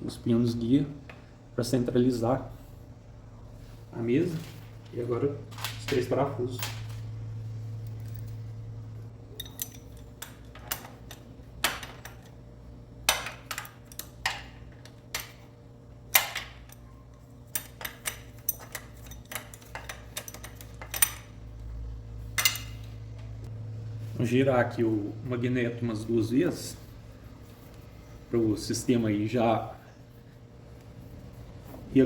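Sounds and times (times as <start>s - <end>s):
steady low hum: 0.0s - 32.0s
metal tools clinking on bolts: 9.3s - 12.4s, 13.1s - 15.4s, 17.5s - 21.4s, 22.4s - 22.9s.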